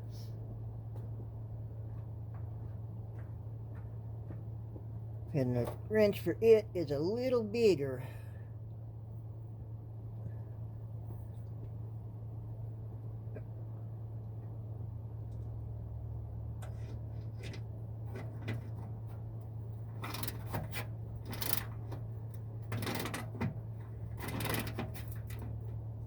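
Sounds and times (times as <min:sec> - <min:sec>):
steady low hum: 0:00.0 - 0:26.0
wrench clicking and scraping: 0:20.0 - 0:21.8.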